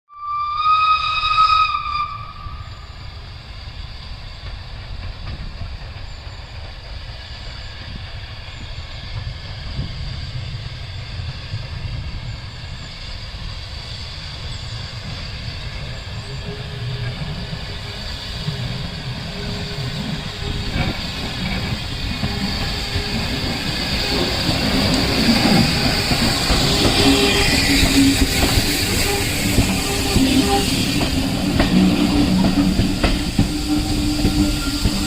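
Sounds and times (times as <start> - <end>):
steam locomotive whistle: 0.1 - 3.1, 15.8 - 35.0
steam hissing: 1.3 - 35.0
locomotive rumble: 1.7 - 35.0.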